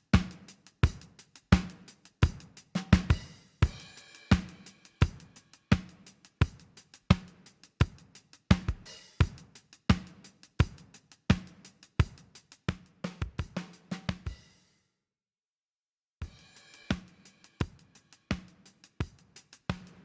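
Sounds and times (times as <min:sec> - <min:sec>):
drum kit playing steady beat: 0:00.0 - 0:14.6, 0:16.2 - 0:20.0.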